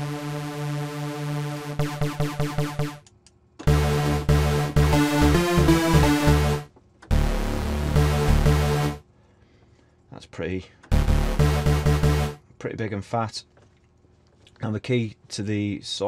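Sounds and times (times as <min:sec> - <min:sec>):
synth notes: 0:00.0 - 0:03.0, 0:03.6 - 0:09.0, 0:10.9 - 0:12.4
deep bass: 0:03.7 - 0:09.0, 0:10.9 - 0:12.4.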